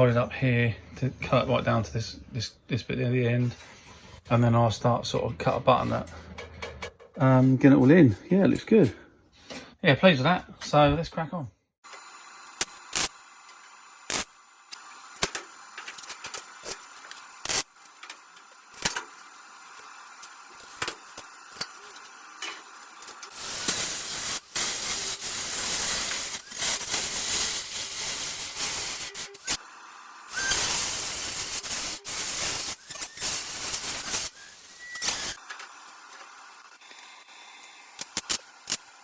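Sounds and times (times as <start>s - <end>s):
electric welder crackling on steel: 11.9s - 29.7s, 30.3s - 39.0s.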